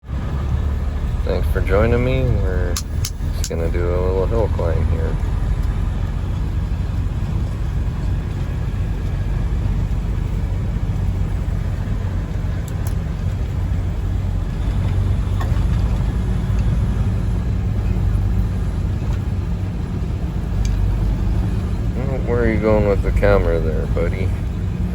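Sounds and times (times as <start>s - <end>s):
truck diesel engine droning uphill: 0.0s - 24.9s
faint clicks: 20.5s - 21.0s.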